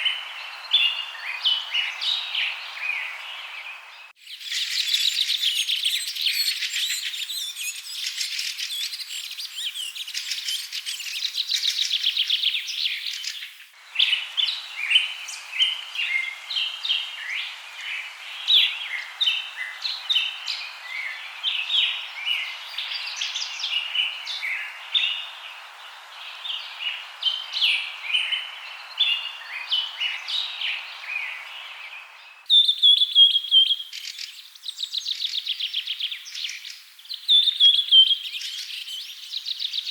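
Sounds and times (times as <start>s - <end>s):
bird chirps: 0.0s - 39.9s
faint hiss: 0.0s - 39.9s
songbirds trilling: 0.0s - 39.9s.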